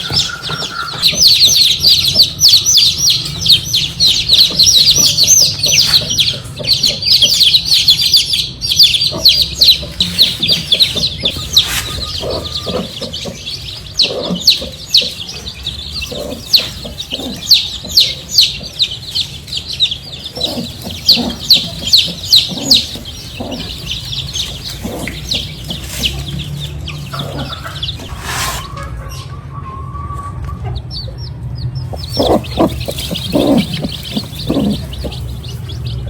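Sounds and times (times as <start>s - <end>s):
chickens clucking: 0.0s - 36.0s
chickens peeping: 0.0s - 36.0s.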